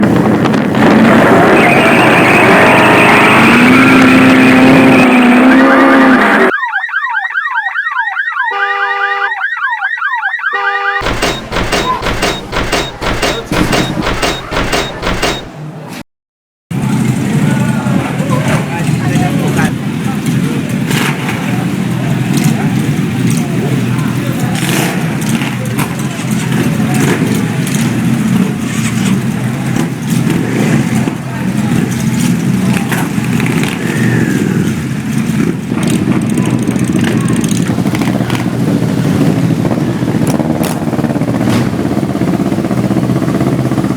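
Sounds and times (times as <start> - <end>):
motorcycle engines idling and revving: 0.0 - 16.0, 16.7 - 43.9
electronic alarm chirps: 6.4 - 15.6
steady beeping tones: 6.5 - 15.6
pounding beat: 10.8 - 15.6.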